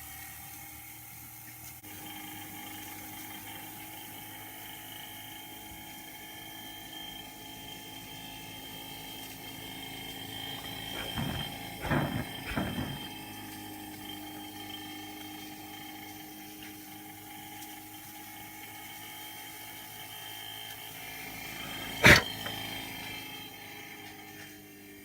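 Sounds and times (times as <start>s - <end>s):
short irregular noises: 10.6s - 13.1s, 22.0s - 22.5s
steam engine whirring: 10.6s - 13.1s, 22.0s - 22.5s.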